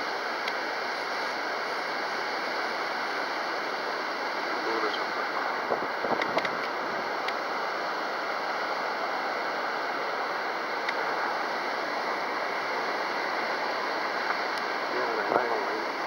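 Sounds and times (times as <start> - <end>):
wind hissing over microphone: 4.0 - 10.4.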